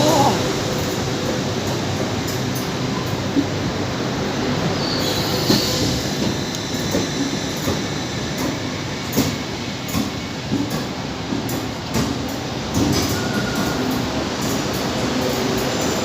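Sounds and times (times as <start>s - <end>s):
train rumbling: 0.0s - 16.0s
high wheel squeal: 4.8s - 7.2s, 13.0s - 14.0s.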